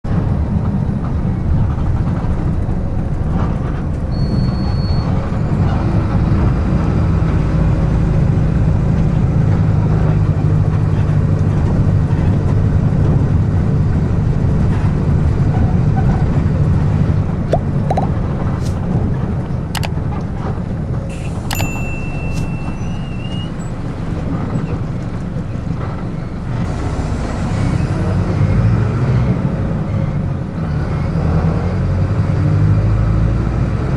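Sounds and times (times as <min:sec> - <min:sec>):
bus engine droning: 0:00.1 - 0:33.9
high beep: 0:21.1 - 0:23.6
wavering whistle: 0:21.2 - 0:23.7.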